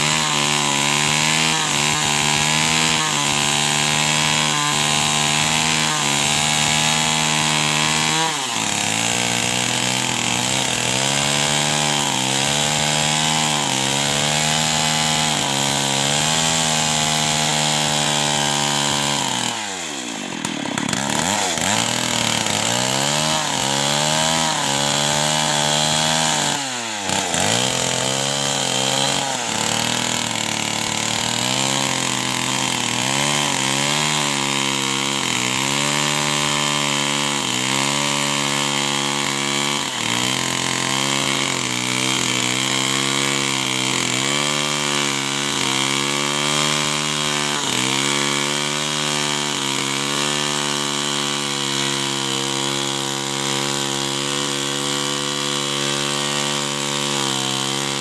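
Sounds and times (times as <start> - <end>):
chainsaw cutting wood: 0.0 - 58.0.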